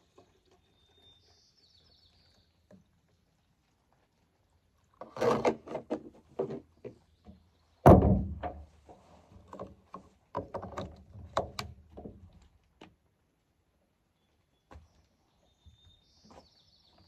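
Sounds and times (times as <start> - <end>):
wood knocking and snapping: 7.8 - 8.6
heavy thump: 7.9 - 8.6.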